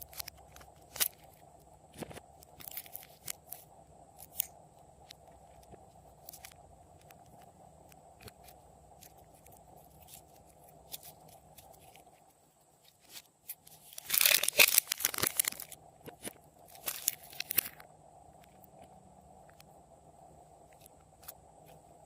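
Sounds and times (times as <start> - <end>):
small clicks: 0.0 - 12.2
crunching and crackling: 0.0 - 19.7
slime being worked by hand: 12.8 - 17.7.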